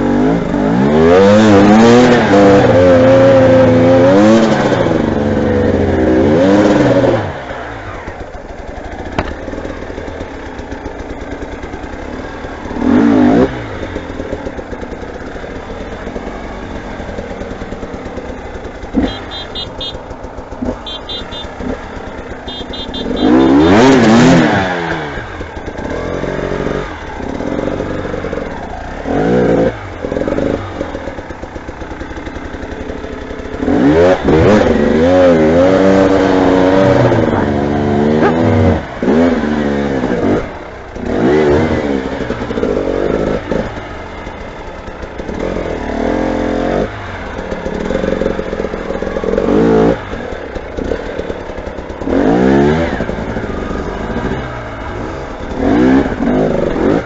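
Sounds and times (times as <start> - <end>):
motorcycles revving past: 16.7 - 28.6, 33.4 - 43.6.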